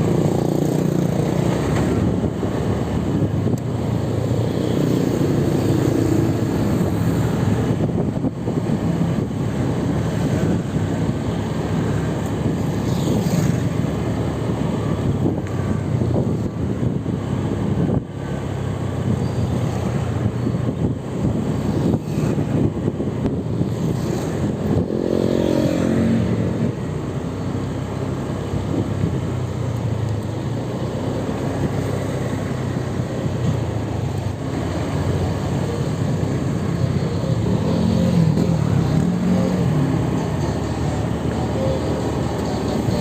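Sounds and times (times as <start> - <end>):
traffic road noise: 0.0 - 43.0
vehicle engine revving: 34.9 - 43.0.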